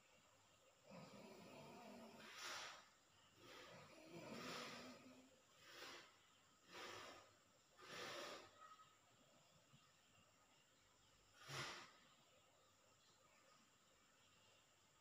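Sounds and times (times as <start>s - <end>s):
person snoring softly: 0.8s - 8.7s.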